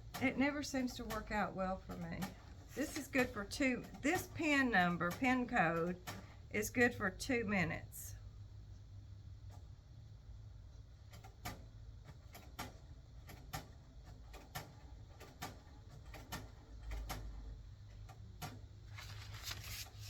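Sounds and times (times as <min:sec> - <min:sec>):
soft rustle: 0:18.9 - 0:20.0.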